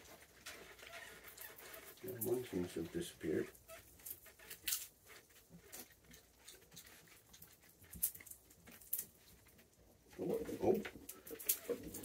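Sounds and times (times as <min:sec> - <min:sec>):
peanut shells clicking and rustling: 0:05.7 - 0:09.5, 0:11.0 - 0:12.0.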